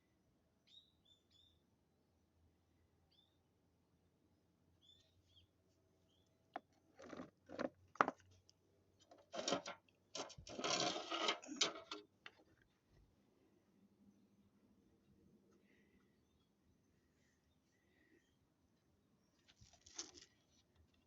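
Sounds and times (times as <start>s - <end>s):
faint bird chirps: 0.6s - 1.6s, 3.1s - 3.4s, 4.8s - 6.4s, 14.0s - 19.5s
scraping and rustling handling noises: 9.0s - 12.4s, 19.4s - 20.6s.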